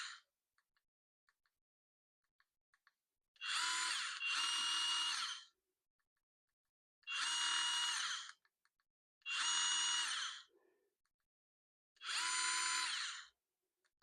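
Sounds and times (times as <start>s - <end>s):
cordless screwdriver whirring: 3.4s - 5.5s, 7.0s - 8.4s, 9.3s - 10.5s, 12.0s - 13.4s.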